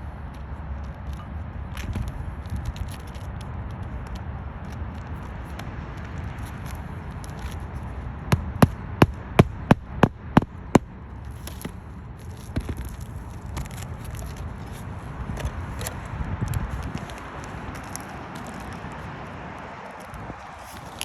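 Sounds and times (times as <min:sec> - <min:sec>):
scraping: 0:11.2 - 0:19.0.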